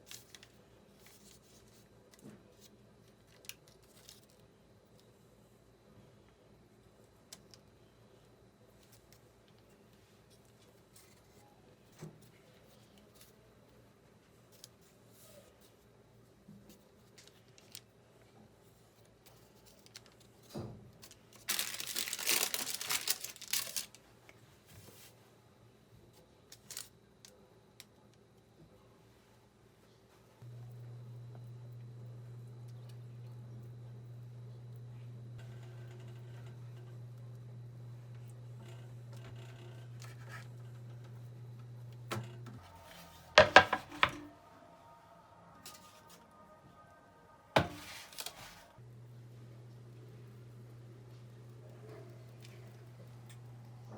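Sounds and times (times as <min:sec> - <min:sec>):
scratching and handling sounds: 0:00.0 - 0:05.1, 0:16.5 - 0:25.3, 0:47.6 - 0:48.8
low steady hum: 0:00.0 - 0:53.9
packaging crinkling and tearing: 0:21.0 - 0:24.0, 0:26.5 - 0:26.9
packaging rustling: 0:21.0 - 0:24.0.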